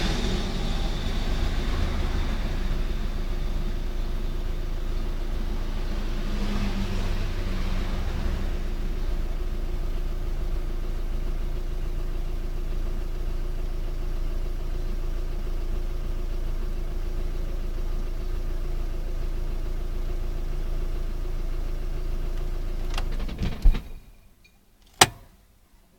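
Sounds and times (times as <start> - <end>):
diesel engine idling: 0.0 - 25.6
switch click: 24.8 - 25.4.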